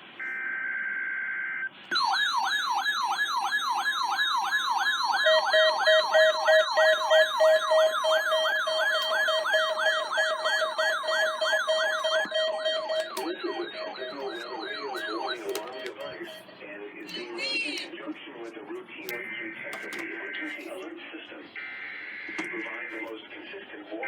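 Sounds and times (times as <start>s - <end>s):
electronic alert siren: 0.2s - 16.6s
digital data tones: 5.7s - 17.9s.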